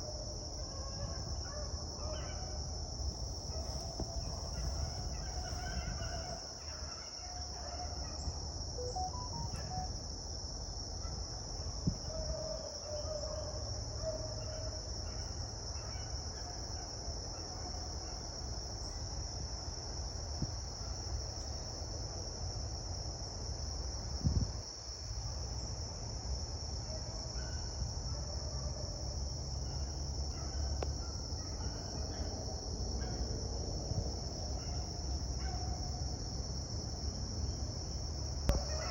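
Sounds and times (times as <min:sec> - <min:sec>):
insects chorus: 0:00.0 - 0:38.9
distant hounds baying: 0:03.3 - 0:08.3, 0:11.0 - 0:16.6, 0:26.9 - 0:33.3, 0:38.5 - 0:38.9.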